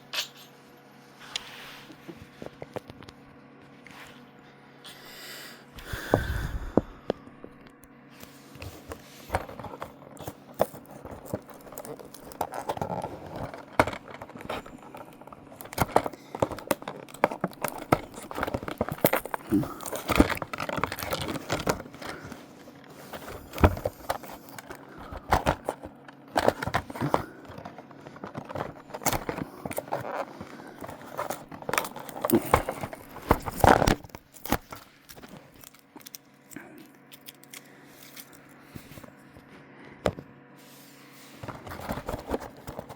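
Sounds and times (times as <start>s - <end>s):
clicks crackles and scrapes: 1.2s - 4.3s, 5.8s - 40.4s, 41.1s - 42.9s
packaging crinkling and tearing: 8.6s - 39.2s, 41.4s - 42.9s.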